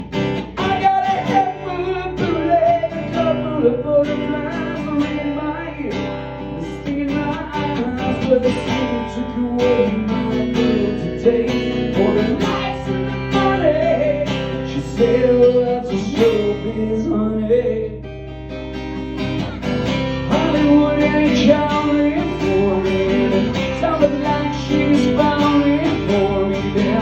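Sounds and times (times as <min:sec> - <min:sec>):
man singing: 0:00.0 - 0:18.0, 0:20.2 - 0:27.0
acoustic guitar strumming: 0:00.0 - 0:27.0.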